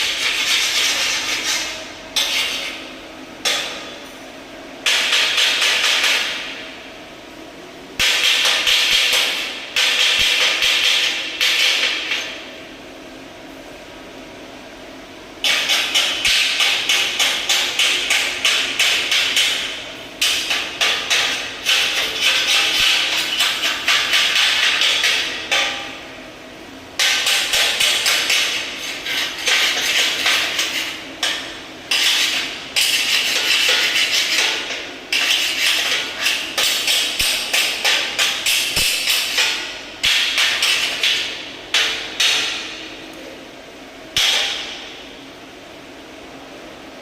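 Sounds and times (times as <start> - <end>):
hammer striking metal: 29.5 - 42.9, 44.2 - 45.0.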